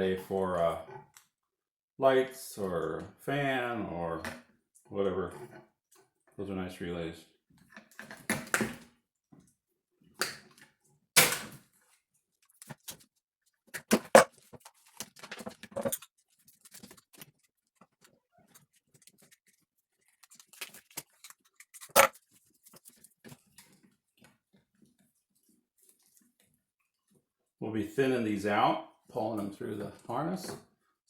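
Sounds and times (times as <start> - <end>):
clicks and rustles of handling: 11.7 - 27.3.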